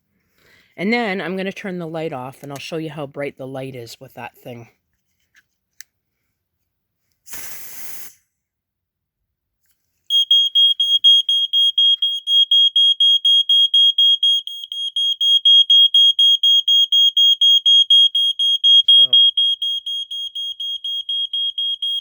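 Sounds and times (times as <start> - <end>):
aerosol spray hiss: 7.3 - 8.2
smoke alarm shrill pulsing: 10.1 - 22.0.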